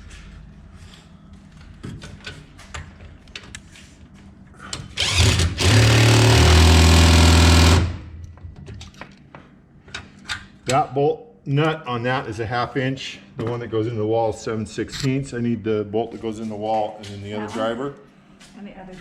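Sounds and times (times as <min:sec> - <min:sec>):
impact driver whirring: 0:05.0 - 0:08.2.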